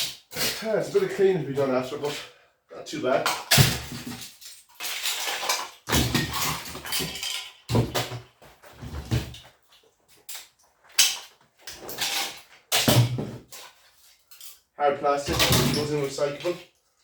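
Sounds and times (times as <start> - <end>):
metal and plastic scraping and rattling: 3.2 - 16.6.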